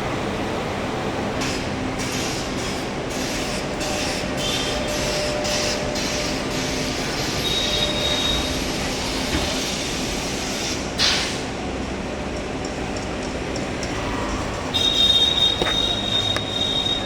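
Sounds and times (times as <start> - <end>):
train rumbling on rails: 0.0 - 17.0
high wheel squeal: 3.3 - 10.0, 14.0 - 17.0.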